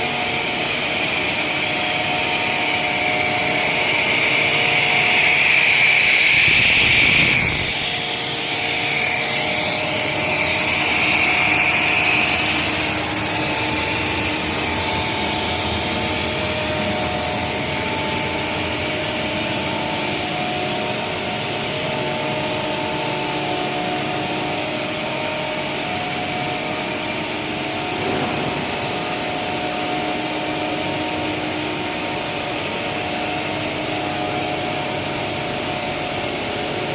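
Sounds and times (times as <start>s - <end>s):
extrusion machine droning: 0.0s - 36.9s.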